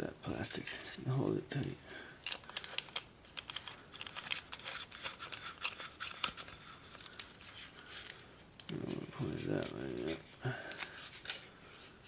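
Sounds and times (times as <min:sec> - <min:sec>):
small clicks and scrapes of hands: 0:02.2 - 0:12.0.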